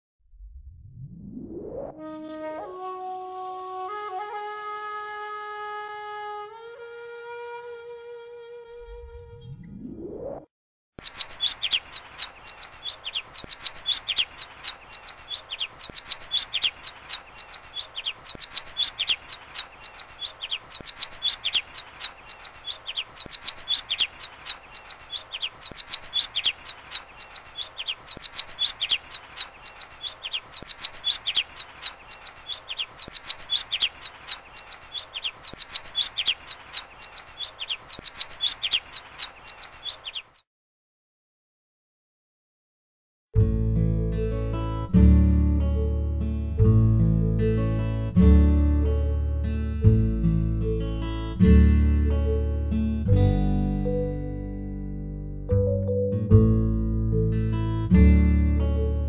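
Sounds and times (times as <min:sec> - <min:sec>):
finch chirping rapidly: 0:11.0 - 0:40.4.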